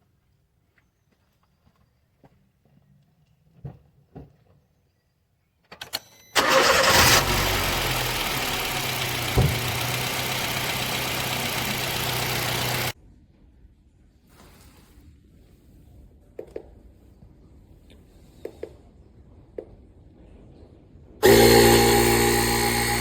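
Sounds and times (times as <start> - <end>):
car engine starting and idling: 6.4 - 13.0, 21.2 - 23.0.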